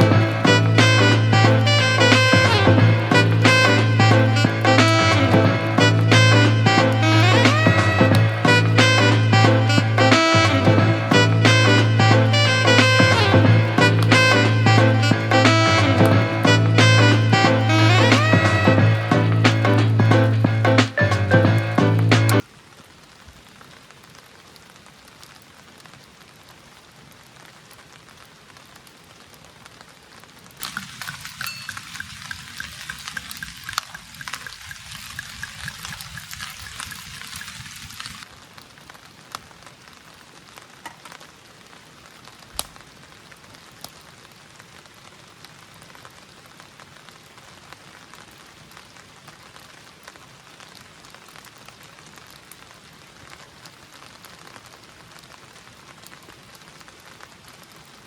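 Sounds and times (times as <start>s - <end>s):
sizzling: 0.0s - 22.5s, 30.6s - 38.4s
rain falling: 0.0s - 58.0s
drips or ticks: 30.6s - 38.1s.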